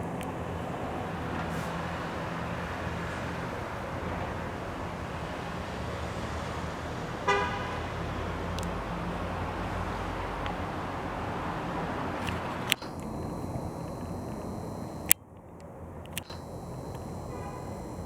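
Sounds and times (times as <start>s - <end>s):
road traffic: 0.0s - 18.0s
car horn toot: 7.3s - 7.8s
sharp click: 12.2s - 18.0s.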